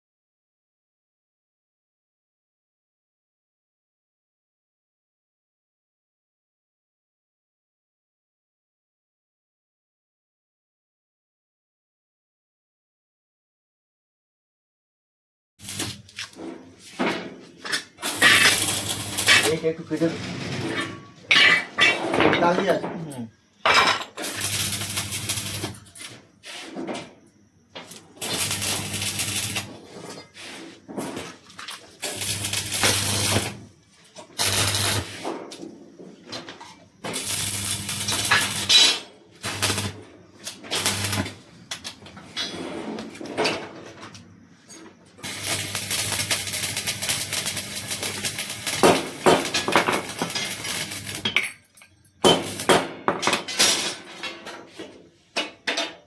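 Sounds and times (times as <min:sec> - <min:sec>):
arc welding crackling: 0:15.6 - 0:16.4, 0:17.6 - 0:20.2, 0:24.2 - 0:26.0, 0:27.9 - 0:29.9, 0:31.8 - 0:33.7, 0:34.4 - 0:35.1, 0:37.1 - 0:41.4, 0:45.2 - 0:51.3, 0:52.3 - 0:52.8
welder mains hum: 0:15.6 - 0:21.1, 0:23.8 - 0:54.0.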